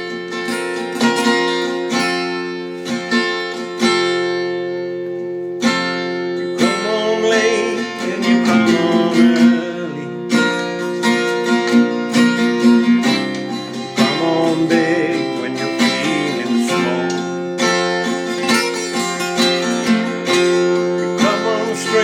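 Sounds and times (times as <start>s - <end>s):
acoustic guitar strumming: 0.0s - 22.0s
person singing: 6.6s - 11.0s, 13.6s - 17.8s, 20.4s - 22.0s.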